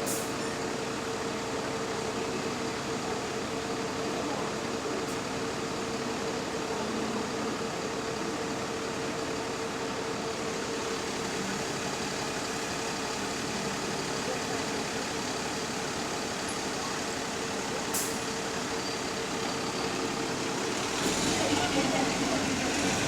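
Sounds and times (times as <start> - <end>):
bus idling: 0.0 - 23.0.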